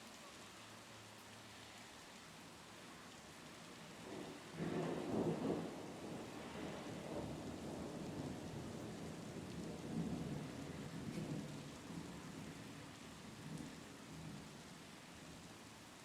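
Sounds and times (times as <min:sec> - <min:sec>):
steady rain: 0:00.0 - 0:16.0
thunder rumbling: 0:04.0 - 0:12.2.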